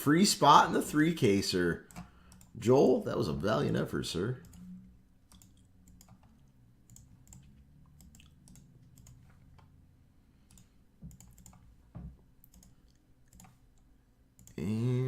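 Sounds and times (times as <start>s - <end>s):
low steady hum: 0.0s - 15.0s
computer keyboard and mouse clicks: 4.4s - 9.7s, 10.5s - 14.6s.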